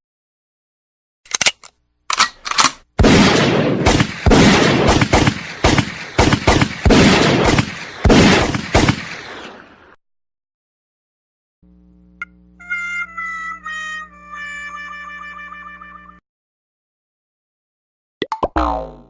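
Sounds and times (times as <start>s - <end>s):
gunshots with echoes: 3.0s - 9.9s.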